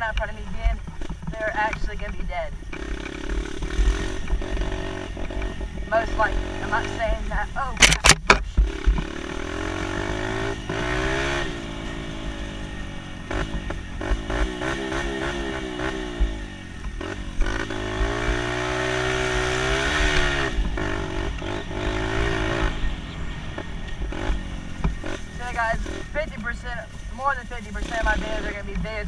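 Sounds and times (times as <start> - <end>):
dirt bike engine revving: 0.0 - 29.0
bike knocks and clatter: 7.8 - 9.1.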